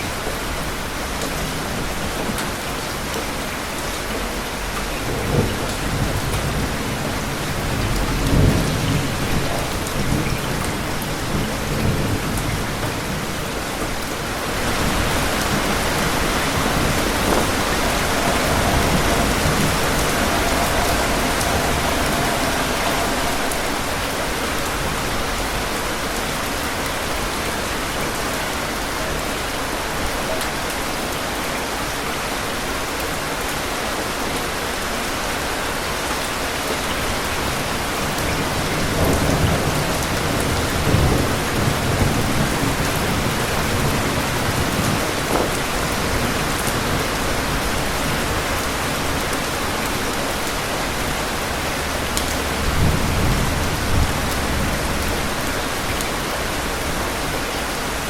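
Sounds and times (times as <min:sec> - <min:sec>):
rain falling: 0:00.0 - 0:58.0
thunder rolling: 0:04.2 - 0:29.2, 0:36.9 - 0:58.0.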